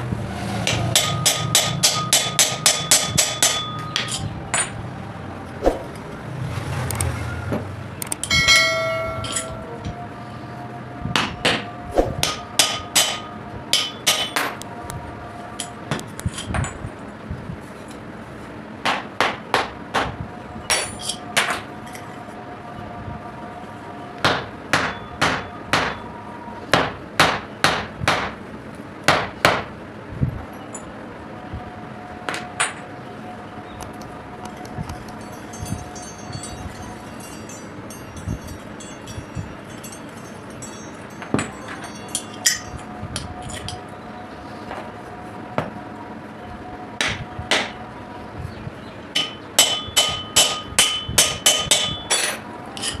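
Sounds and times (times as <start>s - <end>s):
hammer striking metal: 0.6s - 4.8s, 8.2s - 9.8s, 12.2s - 14.6s, 24.2s - 26.0s, 49.2s - 53.0s.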